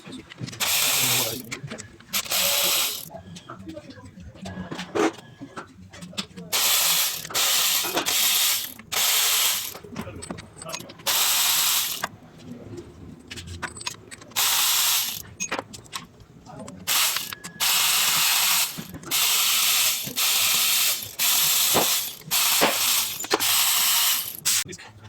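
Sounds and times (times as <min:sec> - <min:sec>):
hissing spray bursts: 0:02.2 - 0:03.1.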